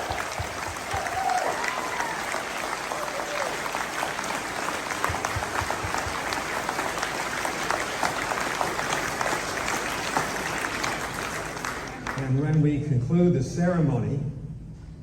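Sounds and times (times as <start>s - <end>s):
audience clapping: 0.0s - 12.6s.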